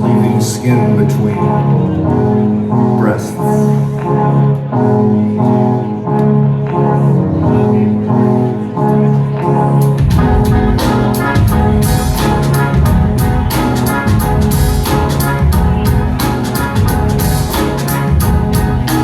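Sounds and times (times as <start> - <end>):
bass and drums: 9.8 - 19.0.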